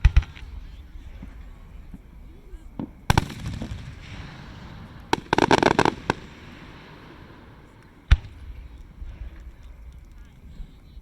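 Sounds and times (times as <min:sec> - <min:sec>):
fireworks crackling: 0:00.0 - 0:11.0
deep firework boom: 0:02.8 - 0:09.8.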